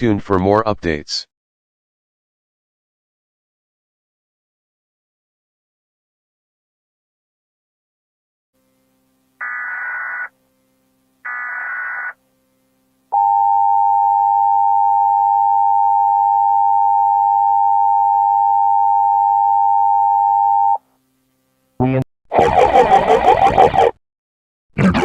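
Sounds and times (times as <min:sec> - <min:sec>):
screechy data bursts: 0:09.4 - 0:10.3, 0:11.3 - 0:12.2, 0:22.4 - 0:23.9.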